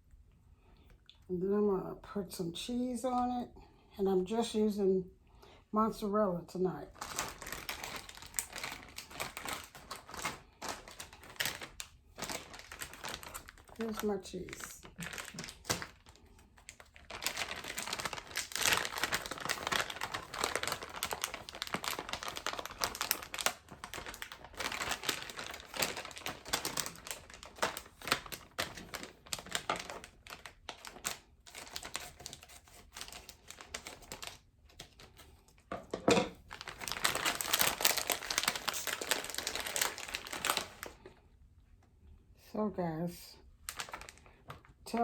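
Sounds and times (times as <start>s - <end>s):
plastic bag crinkling: 6.8s - 41.1s, 43.6s - 45.0s.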